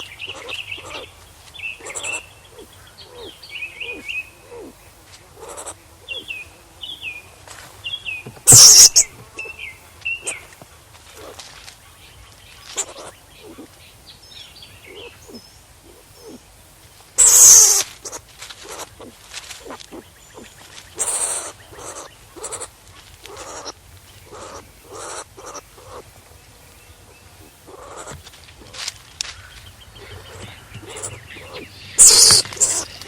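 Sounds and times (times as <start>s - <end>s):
skunk harsh noisy call: 0.0s - 1.1s, 1.8s - 4.7s, 5.4s - 6.3s, 8.4s - 9.5s, 17.2s - 20.0s, 21.0s - 26.1s, 27.4s - 33.0s
skunk squeaks and chirps: 0.0s - 4.8s, 5.4s - 6.4s, 8.4s - 10.5s, 12.3s - 13.8s, 14.8s - 16.4s, 17.2s - 26.2s, 27.1s - 33.0s.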